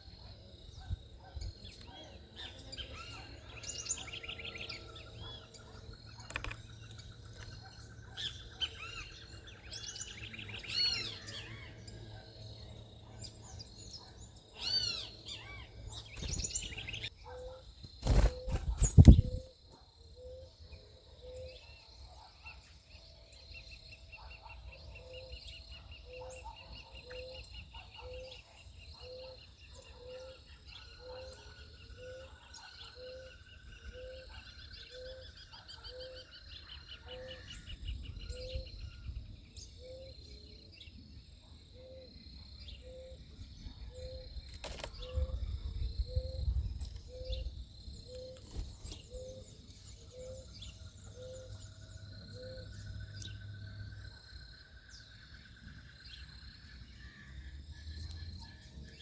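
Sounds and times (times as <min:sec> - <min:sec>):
birds chirping and calling: 0:00.7 - 0:41.0, 0:41.8 - 0:59.0.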